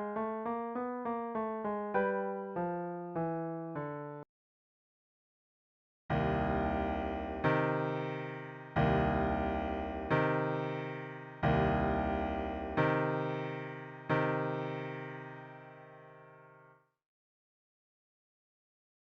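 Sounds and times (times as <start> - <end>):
piano playing slow chords: 0.0 - 4.3, 6.1 - 16.7.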